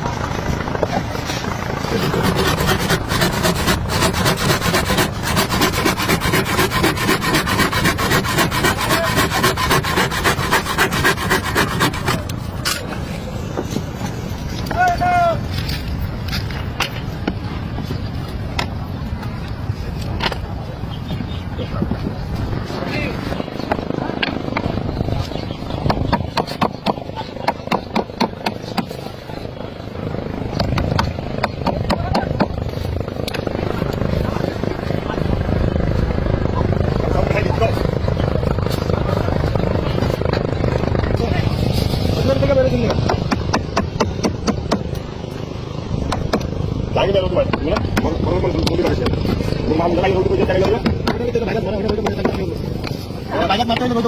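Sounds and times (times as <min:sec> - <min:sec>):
hand tool rasping wood: 0:01.8 - 0:12.4, 0:42.9 - 0:45.0.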